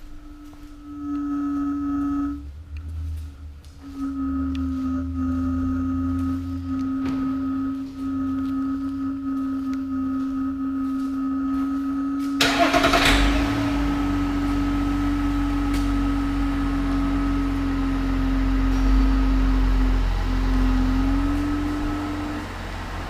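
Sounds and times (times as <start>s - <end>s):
steady electronic tone: 0.0s - 23.0s
diesel engine starting and idling: 12.4s - 23.0s.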